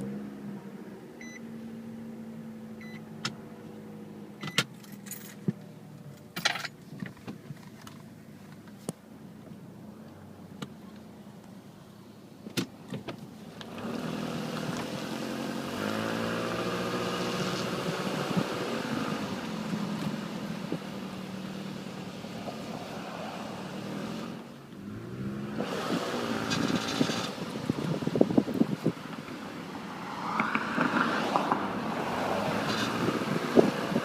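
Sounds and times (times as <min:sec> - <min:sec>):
car engine starting and revving: 0:00.0 - 0:04.4, 0:13.5 - 0:34.0.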